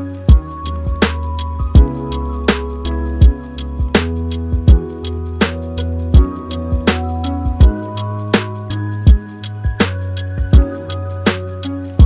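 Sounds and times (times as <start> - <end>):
bass line and chords: 0.0 - 12.0
kick drum: 0.3 - 1.0, 1.7 - 2.0, 3.2 - 4.0, 4.6 - 4.9, 6.2 - 6.9, 7.5 - 7.8, 9.1 - 9.8, 10.4 - 10.7.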